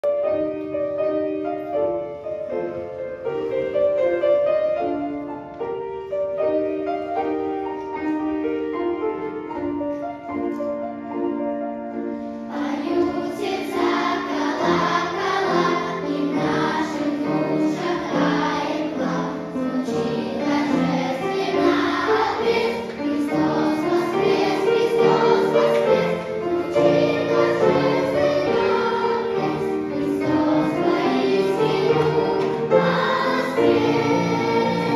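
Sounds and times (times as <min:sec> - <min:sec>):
choir singing: 0:12.4 - 0:34.9.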